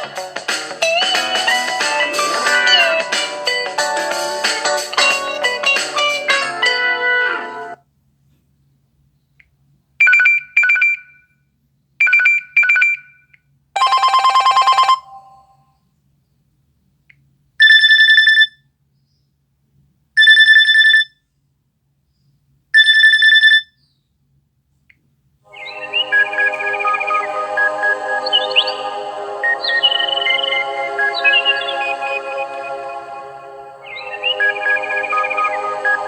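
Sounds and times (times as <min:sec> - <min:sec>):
musical ringtone: 0:00.0 - 0:07.8, 0:13.8 - 0:15.6, 0:25.5 - 0:36.0
electronic bell-like ring: 0:13.8 - 0:15.6.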